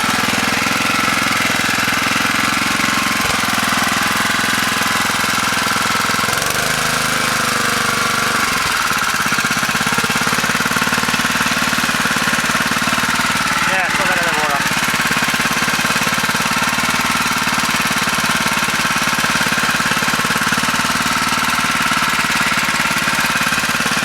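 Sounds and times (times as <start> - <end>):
small petrol engine running: 0.0 - 24.0.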